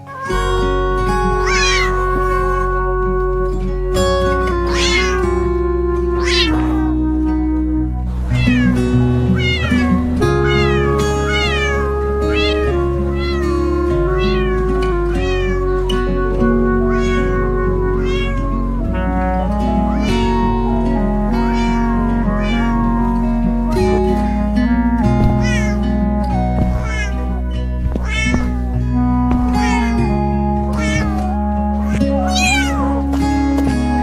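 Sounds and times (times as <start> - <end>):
cat meowing: 0.0 - 2.9, 4.3 - 5.4, 6.2 - 7.0, 8.2 - 19.2, 19.9 - 23.2, 25.1 - 33.1
background music with bass line: 0.0 - 34.0.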